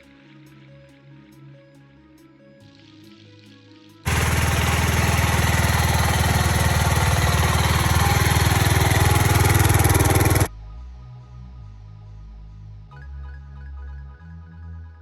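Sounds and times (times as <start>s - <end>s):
motorcycle engine running: 4.1s - 10.5s.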